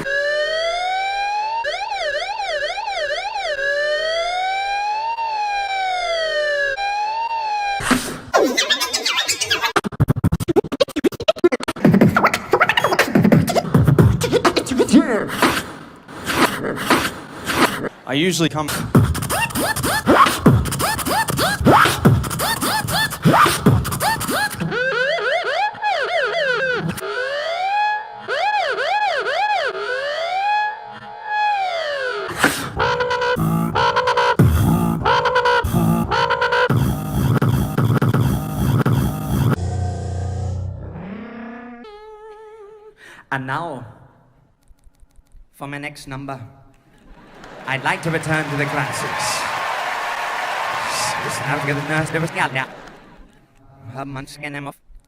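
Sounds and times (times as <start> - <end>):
police siren wailing and yelping: 0.0 - 9.8, 21.1 - 34.4
vocal beatboxing: 8.5 - 18.0, 18.6 - 24.7, 32.3 - 39.6.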